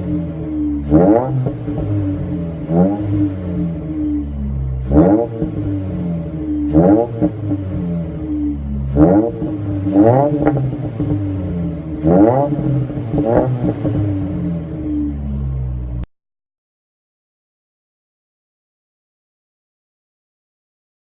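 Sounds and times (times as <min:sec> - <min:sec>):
exhaust pop: 0:00.0 - 0:14.7
car engine revving: 0:00.0 - 0:16.1.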